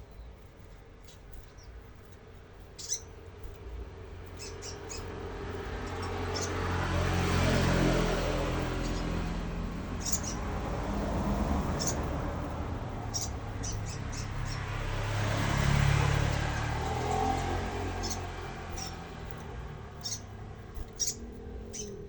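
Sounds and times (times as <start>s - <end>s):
bird squeaky chirps: 0.0s - 6.6s, 8.2s - 9.3s, 10.0s - 10.5s, 11.8s - 12.2s, 13.0s - 14.8s, 16.9s - 22.0s
steady low rumble: 17.5s - 22.0s.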